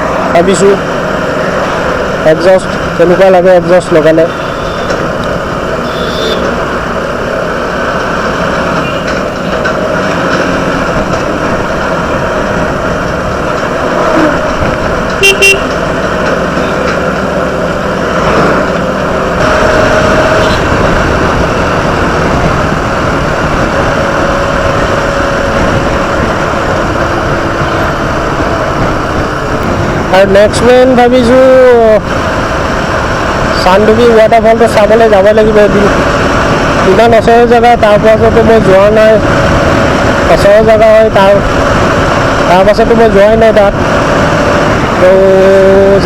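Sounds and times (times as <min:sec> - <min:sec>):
motorcycle engine: 0:00.0 - 0:46.0
vehicle horn toot: 0:04.3 - 0:04.9, 0:05.8 - 0:06.5, 0:15.2 - 0:15.7, 0:20.3 - 0:20.7
wind noise on microphone: 0:19.4 - 0:30.2, 0:38.2 - 0:42.5.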